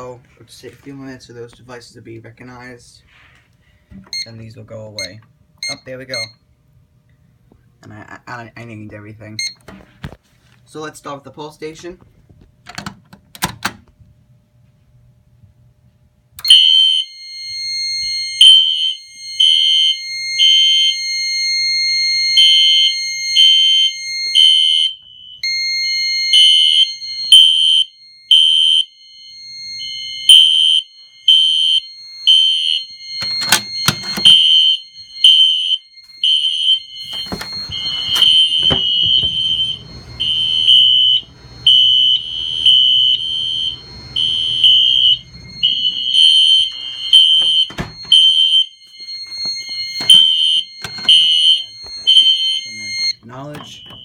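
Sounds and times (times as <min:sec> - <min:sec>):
fire alarm beeps: 0:04.0 - 0:06.4, 0:09.4 - 0:09.7, 0:16.4 - 0:54.0
steady high tone: 0:28.9 - 0:54.0.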